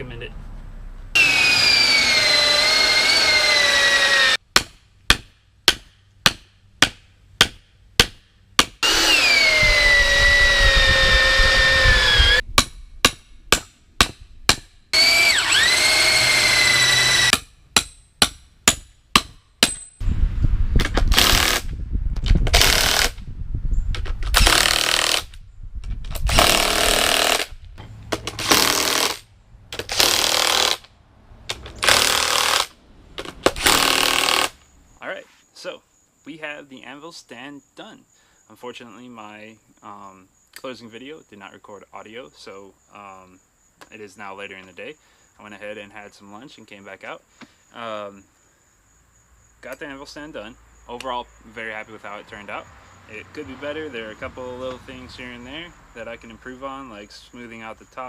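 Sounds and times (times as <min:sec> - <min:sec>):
power tool running under load: 0:01.2 - 0:04.4, 0:08.8 - 0:12.4, 0:15.0 - 0:17.3.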